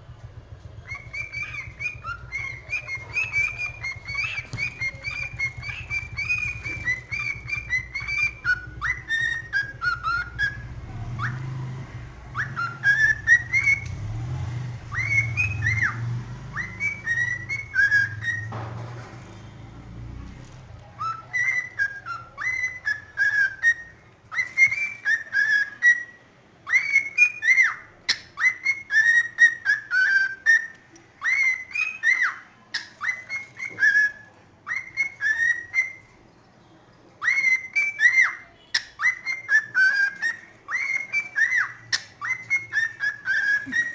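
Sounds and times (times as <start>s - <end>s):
cockatiel whistling: 0.6s - 19.4s, 20.5s - 36.2s, 37.2s - 43.9s.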